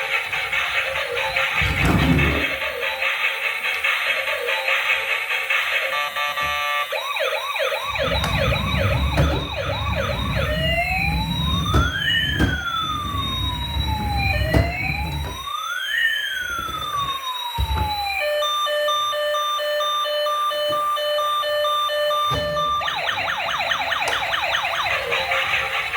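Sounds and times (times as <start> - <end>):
toy electronic siren: 0.0 - 25.9
pulsed beeping: 7.8 - 15.5.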